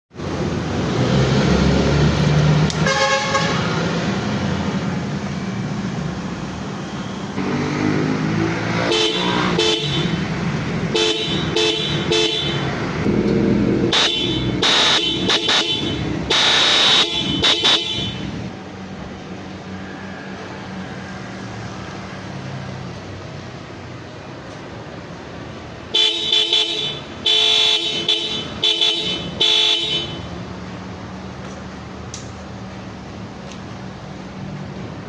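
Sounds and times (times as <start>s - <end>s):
engine running: 0.1s - 26.0s
electric car horn toots: 2.8s - 3.6s, 8.8s - 10.2s, 10.9s - 12.8s, 13.9s - 18.4s, 25.9s - 30.3s.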